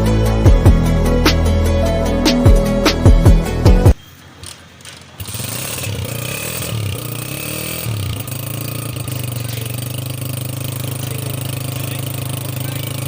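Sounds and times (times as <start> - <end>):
motorcycle engine starting and idling: 4.3 - 13.0.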